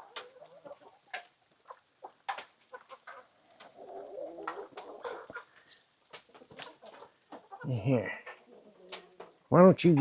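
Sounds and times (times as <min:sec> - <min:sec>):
chickens clucking: 0:00.0 - 0:10.0.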